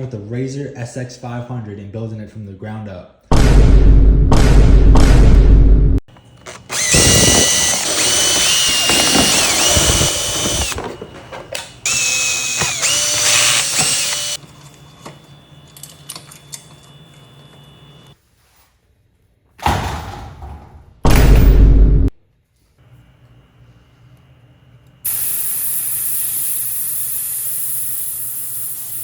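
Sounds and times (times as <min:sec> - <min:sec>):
power drill whining: 0:06.4 - 0:14.4.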